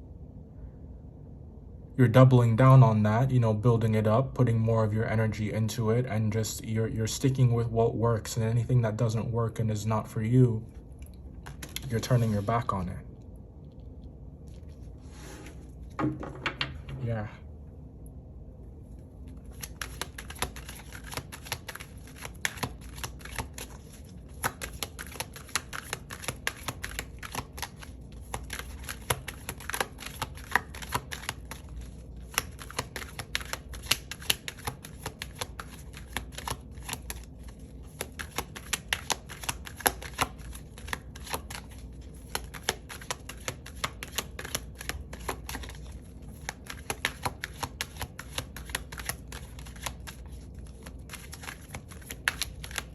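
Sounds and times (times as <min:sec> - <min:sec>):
cards being shuffled: 0:11.4 - 0:12.7, 0:19.3 - 0:52.9.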